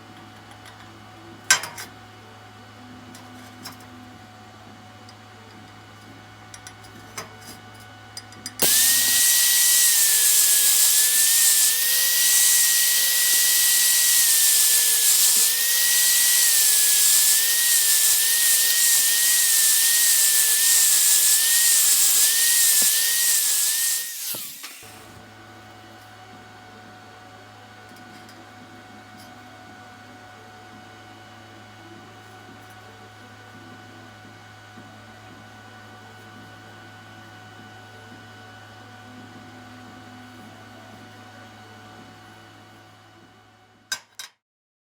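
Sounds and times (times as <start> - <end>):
angle grinder grinding metal: 8.6 - 25.2.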